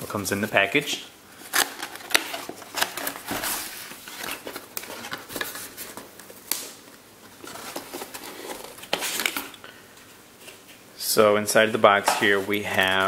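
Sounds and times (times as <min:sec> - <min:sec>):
cardboard packaging rustling: 0:01.4 - 0:09.6.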